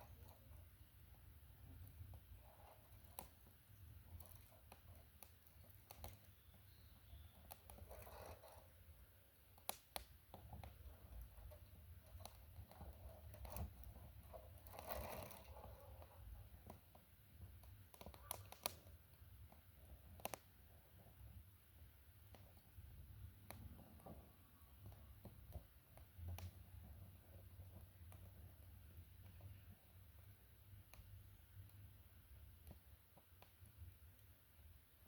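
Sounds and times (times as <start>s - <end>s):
faint clicks: 1.7s - 8.8s, 9.4s - 21.1s, 23.4s - 31.9s, 32.6s - 34.3s
crinkling rustles: 10.8s - 16.8s.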